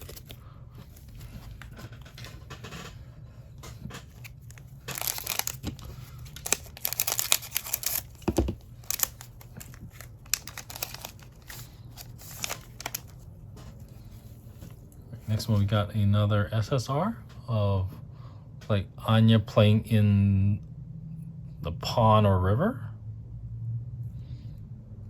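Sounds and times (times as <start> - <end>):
card pack wrapper tearing and crinkling: 0.0 - 2.3, 4.0 - 13.3
handling of cards and packaging: 0.0 - 15.7.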